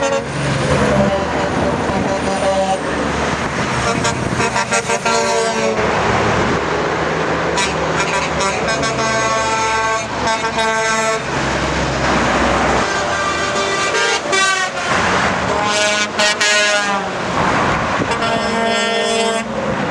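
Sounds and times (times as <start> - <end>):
truck air horn blasts: 0.0 - 3.0, 3.6 - 6.0, 7.5 - 11.4, 12.8 - 17.2, 18.0 - 19.6
passing truck traffic: 0.0 - 19.9.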